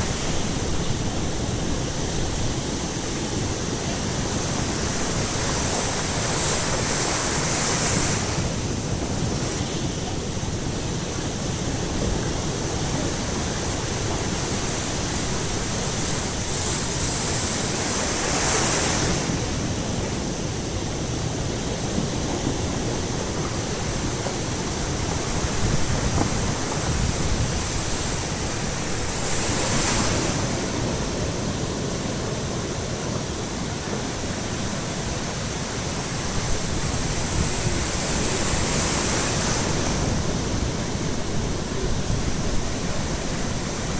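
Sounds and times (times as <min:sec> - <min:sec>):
surf breaking on shore: 0:00.0 - 0:43.9.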